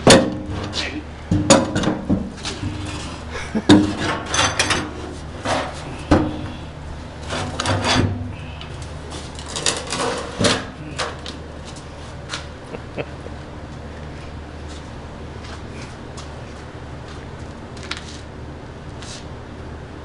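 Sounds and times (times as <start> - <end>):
objects knocking and scraping: 0.0 - 6.6, 7.2 - 11.4
low steady hum: 0.0 - 20.0.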